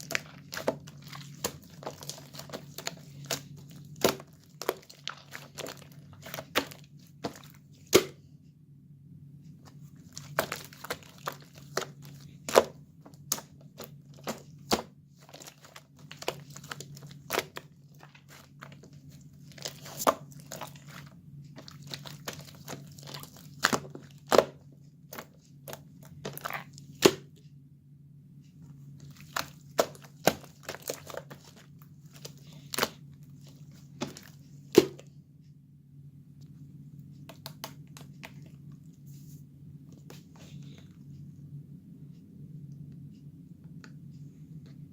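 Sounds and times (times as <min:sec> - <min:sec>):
slime popping and crackling: 0:00.0 - 0:08.2, 0:10.0 - 0:24.6, 0:25.7 - 0:27.3, 0:29.0 - 0:33.0
low steady hum: 0:00.0 - 0:44.9.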